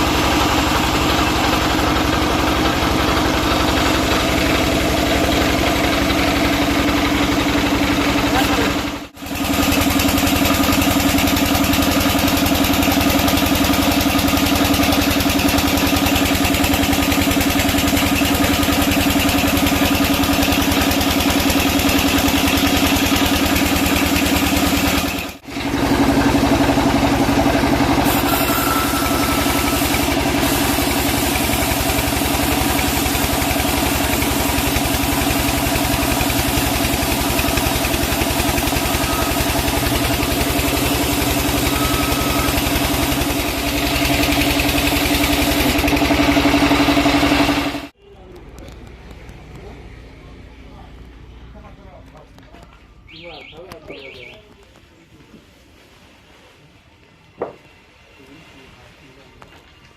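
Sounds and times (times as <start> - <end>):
sawmill machinery drone: 0.0 - 48.0.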